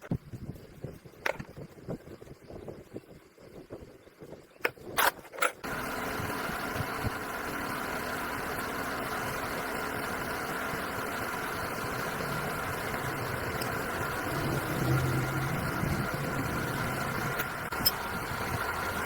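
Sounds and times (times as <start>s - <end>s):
motorcycle engine starting and idling: 5.6s - 19.0s.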